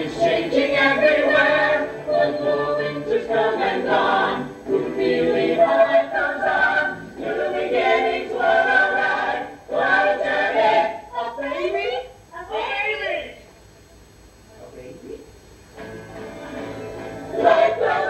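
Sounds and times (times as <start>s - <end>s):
cast singing in chorus: 0.0s - 11.4s, 17.3s - 18.0s.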